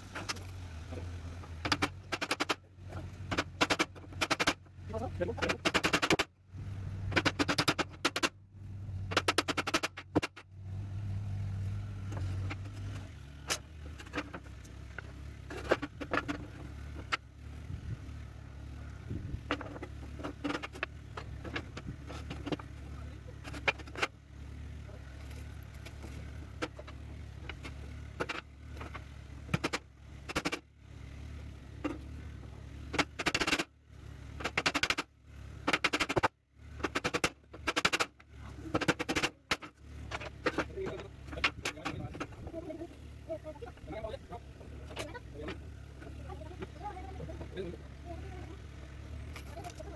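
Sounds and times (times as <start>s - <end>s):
sharp knocks and clicks: 1.5s - 4.7s, 5.4s - 6.3s, 7.1s - 8.4s, 9.0s - 10.5s, 19.4s - 24.2s, 25.4s - 30.7s, 32.9s - 33.7s, 34.4s - 42.5s
rattling bursts: 1.5s - 6.3s, 7.0s - 10.6s, 18.9s - 24.2s, 34.3s - 49.9s.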